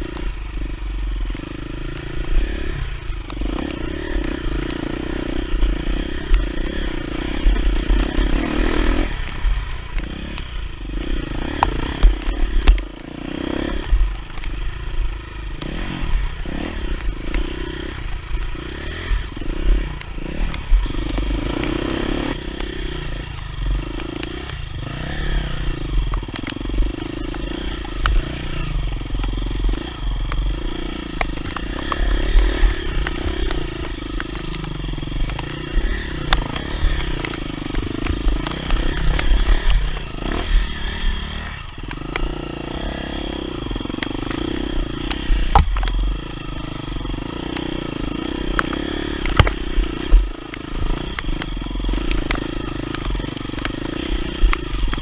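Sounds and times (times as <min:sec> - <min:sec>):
dirt bike engine revving: 0:00.0 - 0:55.0
bike knocks and rattles: 0:43.4 - 0:46.3.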